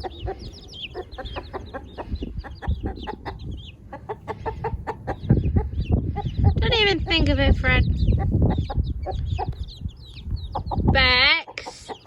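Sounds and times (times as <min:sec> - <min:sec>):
chicks peeping: 0:00.0 - 0:12.0
hen clucking: 0:00.0 - 0:12.0.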